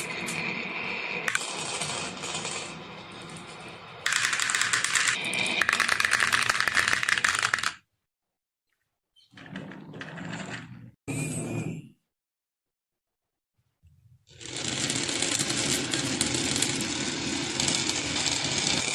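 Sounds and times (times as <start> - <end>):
marbles rattling down wooden run: 4.0 - 7.8.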